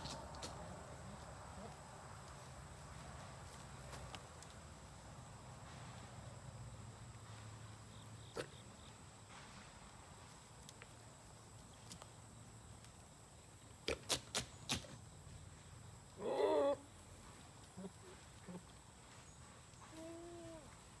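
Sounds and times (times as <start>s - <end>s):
wavering farm animal call: 16.2s - 16.9s, 19.9s - 20.8s.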